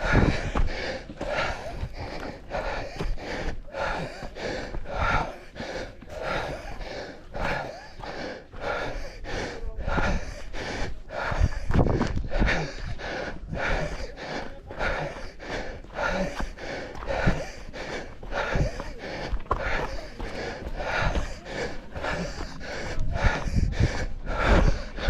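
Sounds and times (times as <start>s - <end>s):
wind buffeting microphone: 9.7s - 14.2s, 18.3s - 25.0s.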